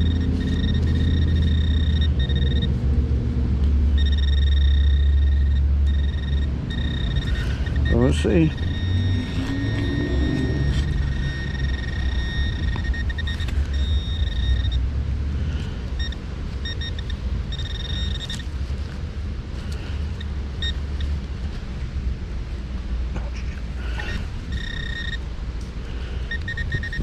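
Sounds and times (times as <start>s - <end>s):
metal detector beeps: 0.0s - 2.8s, 3.6s - 14.8s, 15.9s - 18.5s, 20.1s - 21.1s, 24.0s - 25.2s, 26.3s - 27.0s
low rumble: 0.0s - 18.2s.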